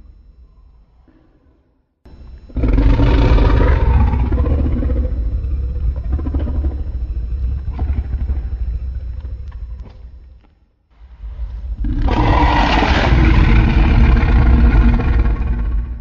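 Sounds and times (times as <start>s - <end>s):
deep rumble: 2.1s - 10.4s, 11.1s - 16.0s
growling monster roar: 2.5s - 6.8s, 11.7s - 16.0s.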